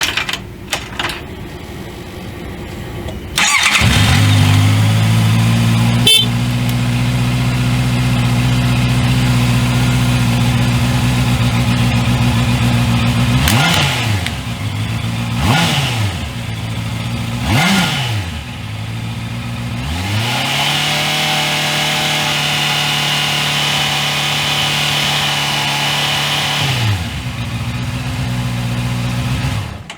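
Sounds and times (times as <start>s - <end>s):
motorcycle engine starting: 0.0s - 29.9s
motorcycle engine idling: 1.5s - 17.6s, 18.2s - 19.9s, 27.0s - 29.9s
motorcycle throttle blips: 2.6s - 19.8s
motorcycle engine revving: 3.3s - 29.9s.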